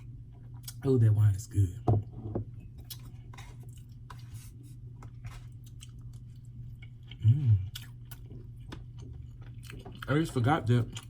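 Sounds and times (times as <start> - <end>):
steady low hum: 0.0 - 11.0
person chewing: 2.8 - 11.0.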